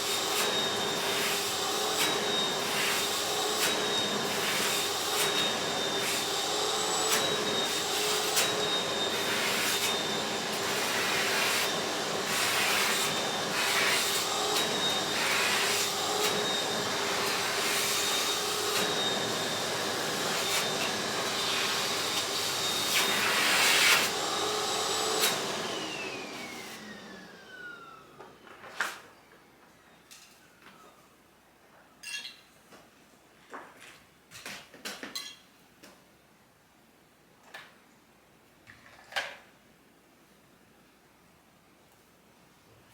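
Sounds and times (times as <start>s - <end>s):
vacuum cleaner running: 0.0s - 29.2s
vacuum motor spinning down: 4.8s - 28.4s.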